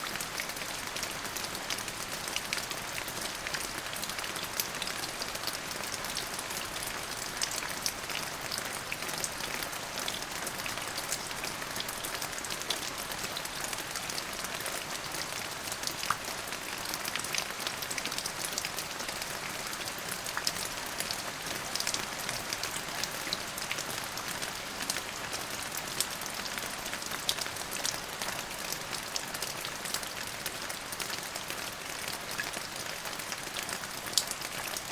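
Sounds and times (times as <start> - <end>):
rain drops pattering: 0.0 - 34.9.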